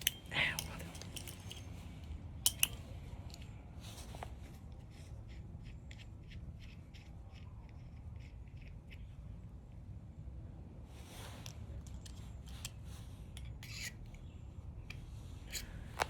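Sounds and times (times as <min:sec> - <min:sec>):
low steady hum: 0:00.0 - 0:16.0
small parts ticking: 0:02.4 - 0:03.5.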